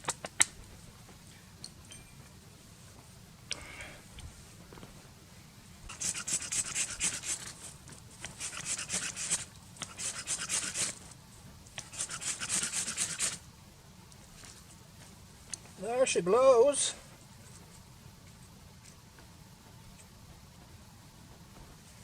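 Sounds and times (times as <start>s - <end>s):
hand saw rasping through wood: 5.9s - 7.5s, 8.3s - 11.0s, 11.8s - 13.4s.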